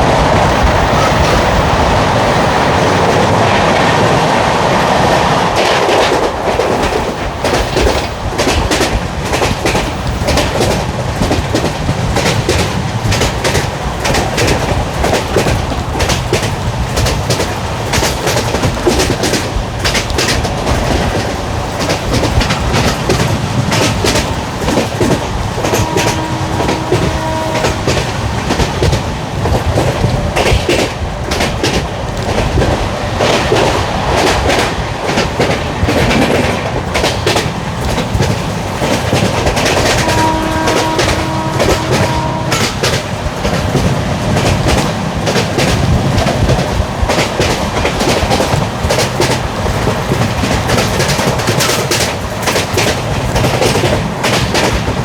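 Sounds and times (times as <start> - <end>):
train wheels rushing on track: 0.0 - 55.0
wheels clacking over rail joints: 0.0 - 55.0.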